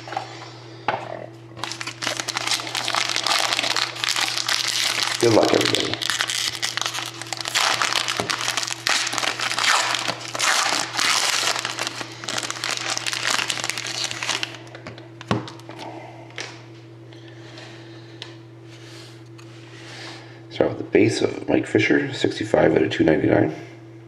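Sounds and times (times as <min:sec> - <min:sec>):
low electrical hum: 0:00.0 - 0:24.0
packaging crinkling and tearing: 0:01.6 - 0:14.7.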